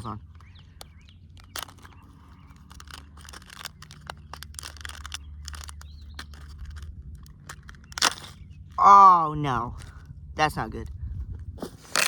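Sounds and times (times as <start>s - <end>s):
plastic packaging crinkling and tearing: 1.4s - 8.1s.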